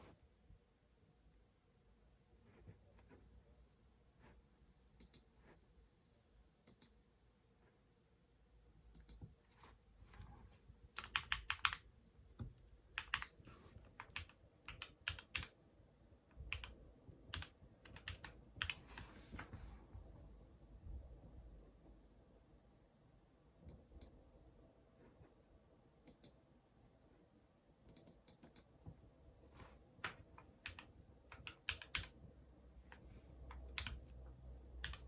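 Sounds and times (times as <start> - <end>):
mechanical keyboard typing: 11.0 - 11.9, 12.9 - 15.5, 16.4 - 19.0, 30.6 - 32.2, 33.5 - 34.1, 34.8 - 35.0.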